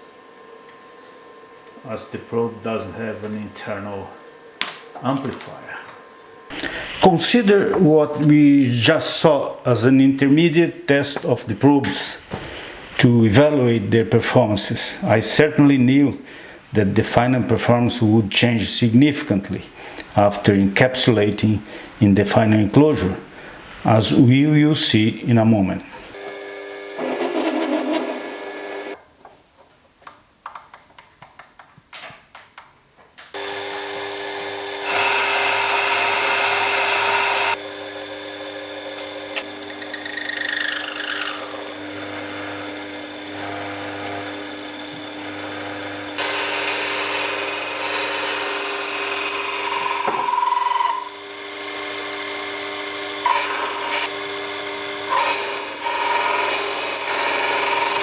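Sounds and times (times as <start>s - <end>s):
power drill motor hum: 26.1s - 29.0s, 33.4s - 58.0s.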